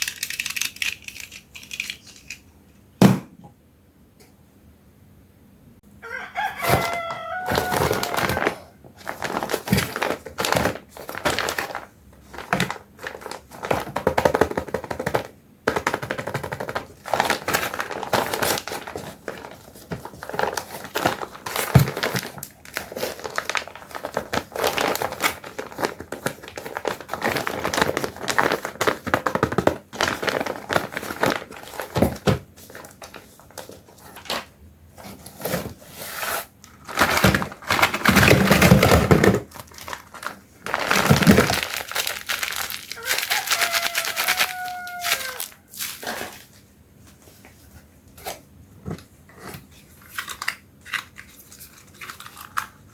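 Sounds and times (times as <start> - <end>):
plastic toy parts clattering: 0.0 - 2.8, 6.7 - 34.5, 36.7 - 46.4
plastic packaging crinkling: 6.5 - 46.6.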